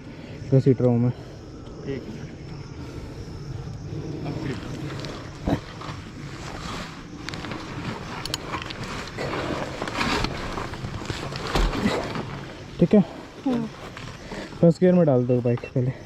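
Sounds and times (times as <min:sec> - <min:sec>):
motorcycle scraping over dirt: 0:04.3 - 0:14.7.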